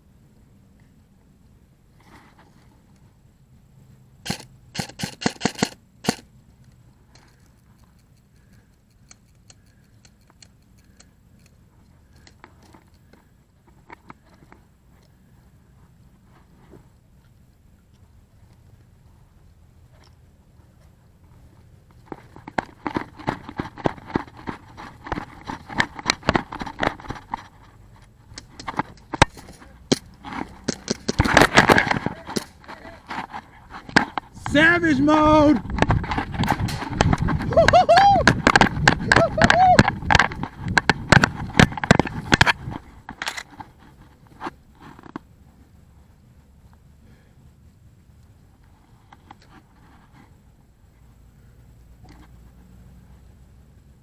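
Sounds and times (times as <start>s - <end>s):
airsoft gun shots: 4.3s - 6.3s
faint ticks: 6.2s - 15.5s
footsteps on rough ground: 20.8s - 44.4s.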